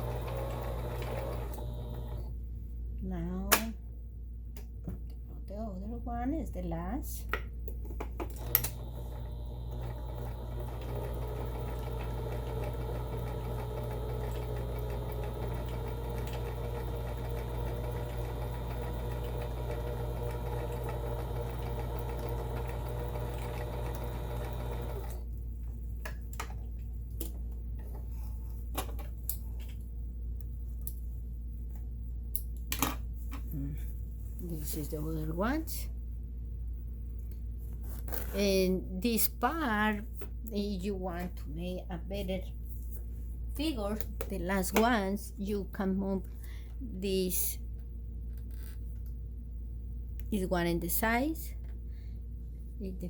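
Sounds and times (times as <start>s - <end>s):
sewing machine stitching: 0.0s - 2.3s, 8.3s - 25.2s.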